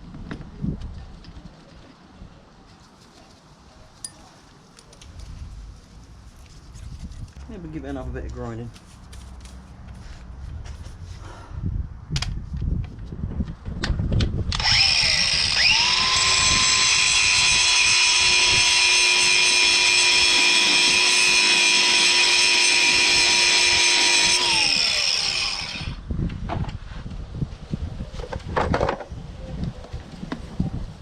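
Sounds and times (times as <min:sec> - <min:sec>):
power grinder grinding metal: 0:14.6 - 0:26.0.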